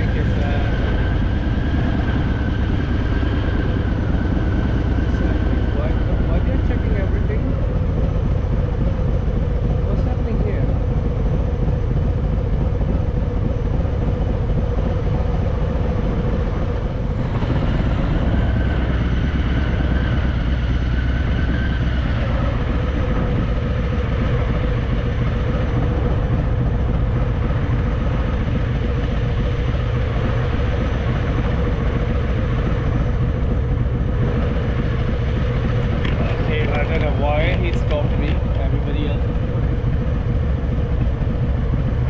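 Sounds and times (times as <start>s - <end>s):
motorcycle engine running: 0.0s - 42.0s
rush of noise: 0.0s - 42.0s.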